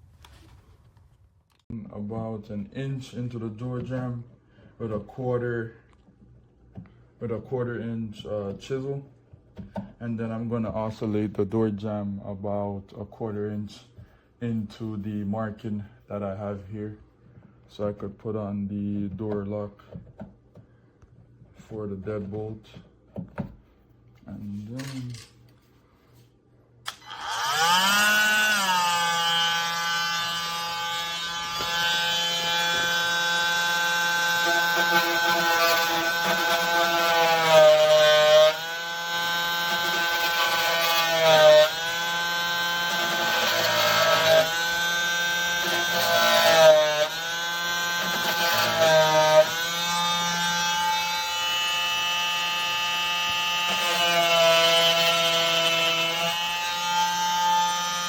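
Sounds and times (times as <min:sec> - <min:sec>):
oscillating tool sawing wood: 0:26.9 - 0:58.0.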